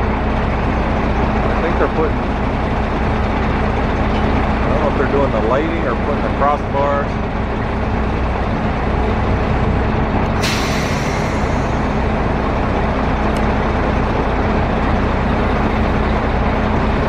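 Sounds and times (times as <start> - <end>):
engine rumble: 0.0 - 17.0
air release hiss: 10.4 - 11.9.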